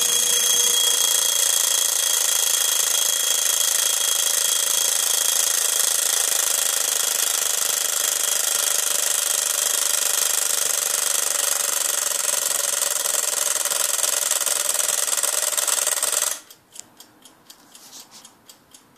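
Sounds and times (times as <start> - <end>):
alarm clock bell ringing: 0.0 - 16.5
clock ticking: 0.0 - 18.9.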